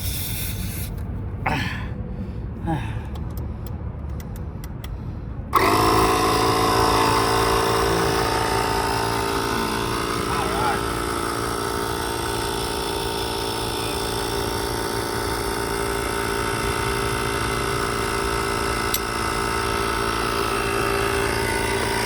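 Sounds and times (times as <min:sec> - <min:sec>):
electric tire inflator running: 0:00.0 - 0:01.1, 0:05.5 - 0:22.0.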